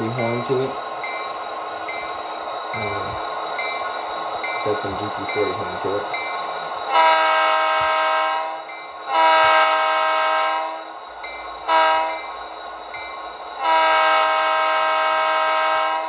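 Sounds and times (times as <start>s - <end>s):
model locomotive air horn blasts: 6.9s - 10.8s, 11.7s - 12.2s, 13.6s - 16.0s.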